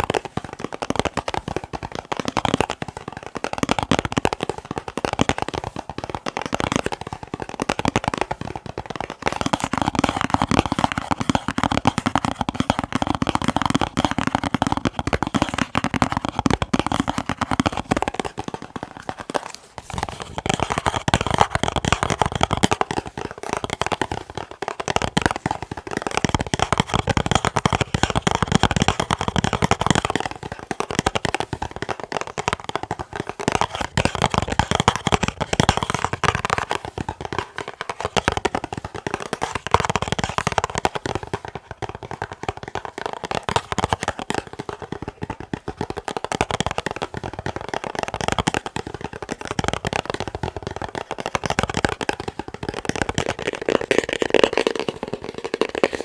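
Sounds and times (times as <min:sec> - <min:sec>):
fast tapping on boxes: 0:00.0 - 0:56.0.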